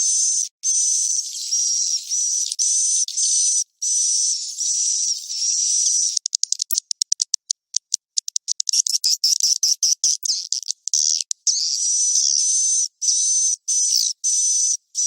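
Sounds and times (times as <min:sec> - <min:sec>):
buzzy chirring bird calls: 0:00.0 - 0:06.8, 0:08.2 - 0:15.0
rapid sharp clicks with chirps: 0:05.6 - 0:12.4.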